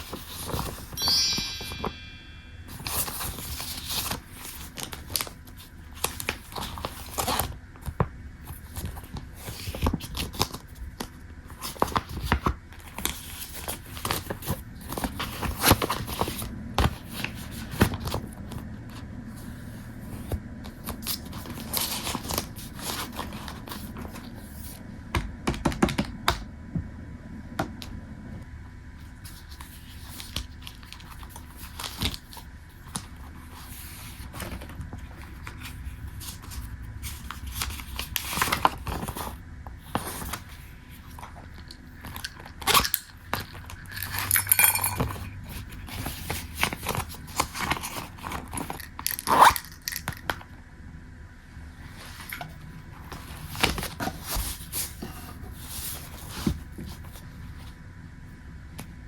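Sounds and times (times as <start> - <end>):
paper rustling and crinkling: 0.0 - 1.0, 2.8 - 18.3, 19.4 - 24.8, 29.0 - 44.4, 45.0 - 49.5, 51.8 - 57.8.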